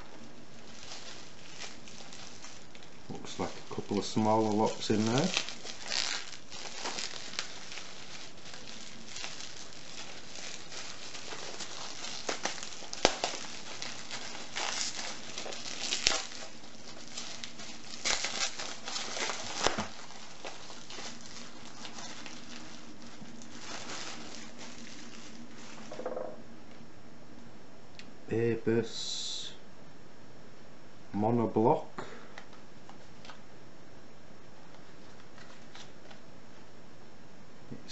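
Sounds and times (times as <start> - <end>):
packaging rustling and crinkling: 0.0 - 26.4, 34.6 - 36.2.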